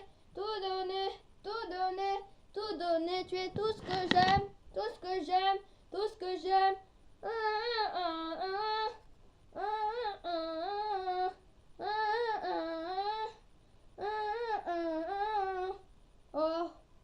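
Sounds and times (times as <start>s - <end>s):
child singing alone: 0.0s - 13.4s, 14.0s - 16.9s.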